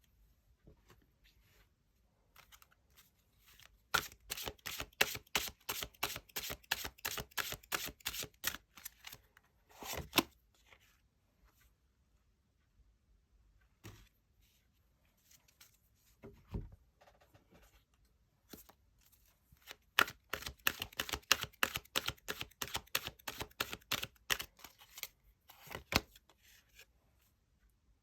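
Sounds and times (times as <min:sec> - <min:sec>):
cards shuffling: 0:03.5 - 0:09.2, 0:19.6 - 0:26.1.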